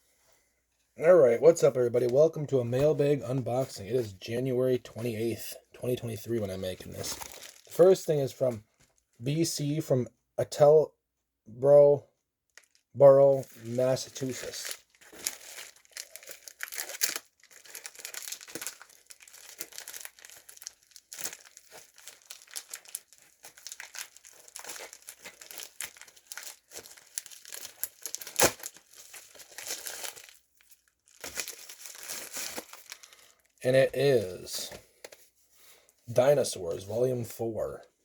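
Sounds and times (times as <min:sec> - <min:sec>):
packaging crinkling and tearing: 0:06.8 - 0:08.0, 0:12.5 - 0:33.8.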